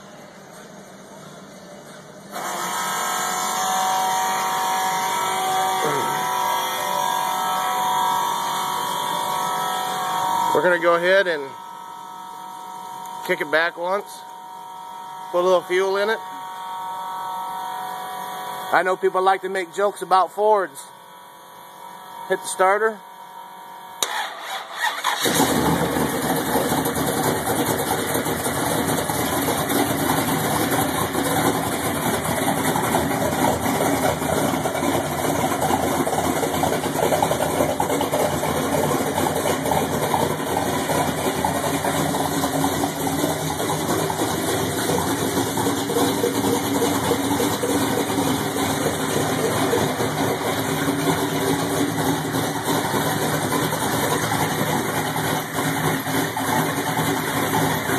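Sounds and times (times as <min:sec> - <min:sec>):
engine idling: 0:00.0 - 0:57.9
starter cranking engine: 0:24.0 - 0:57.9.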